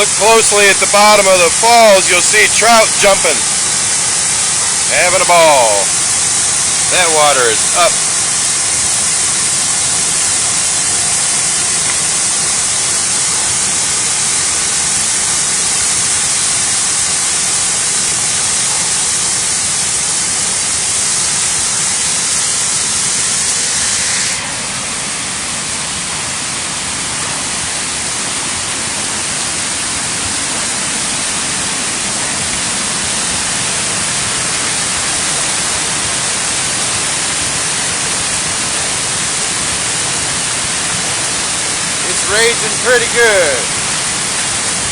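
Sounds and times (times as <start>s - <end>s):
water rushing over waterfall: 0.0s - 44.9s.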